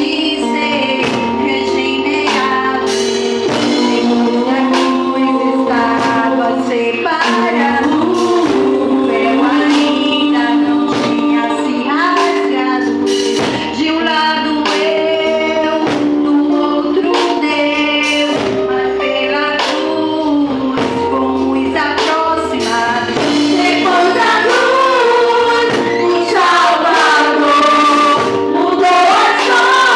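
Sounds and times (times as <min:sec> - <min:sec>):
band accompaniment: 0:00.0 - 0:29.9
women singing worship songs: 0:00.0 - 0:29.9
drum hits: 0:02.3 - 0:10.2, 0:22.0 - 0:29.9.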